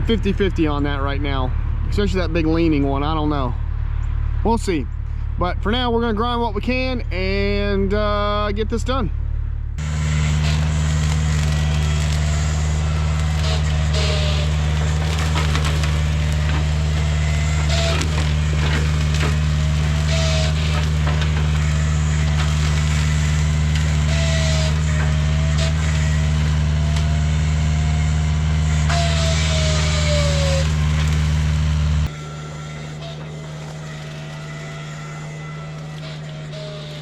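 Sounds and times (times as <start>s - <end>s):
excavator engine running hard: 0.0s - 37.0s
hydraulic whine: 0.0s - 37.0s
brush cutter splintering wood: 9.8s - 37.0s.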